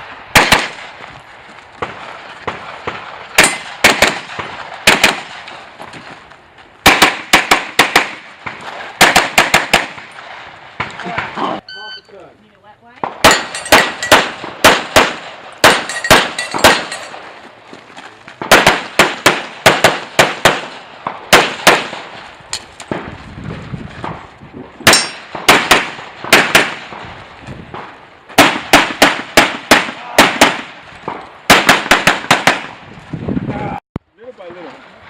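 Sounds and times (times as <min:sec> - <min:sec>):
pistol shots: 0:00.3 - 0:01.0, 0:01.8 - 0:05.6, 0:06.8 - 0:11.6, 0:13.0 - 0:17.3, 0:18.4 - 0:22.2, 0:24.8 - 0:27.1, 0:27.7 - 0:32.8.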